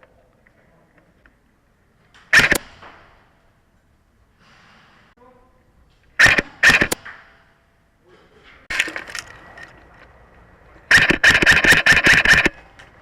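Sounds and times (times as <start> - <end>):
airsoft rifle firing: 2.3 - 3.0, 6.2 - 7.1, 10.9 - 12.6.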